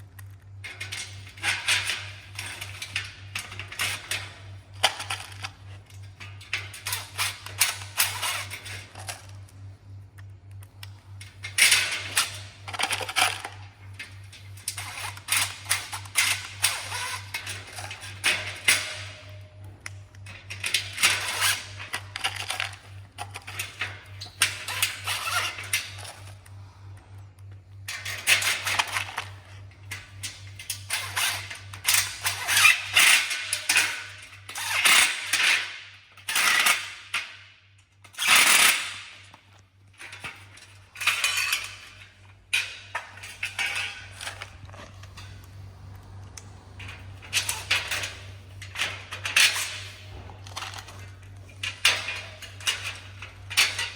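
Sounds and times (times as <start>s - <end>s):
steady low hum: 0.0s - 53.9s
metal parts clattering: 40.0s - 45.4s.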